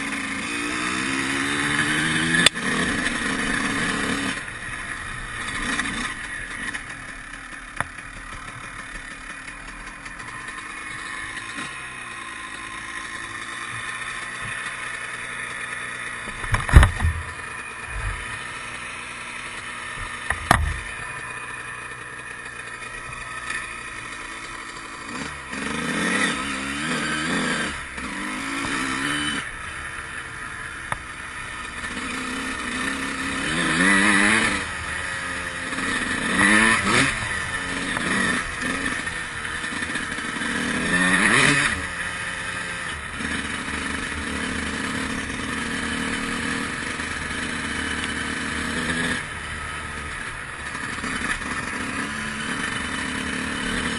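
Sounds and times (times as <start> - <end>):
two-stroke motorcycle engine revving: 0.0 - 53.9
sharp thump: 16.4 - 17.4, 20.2 - 20.9.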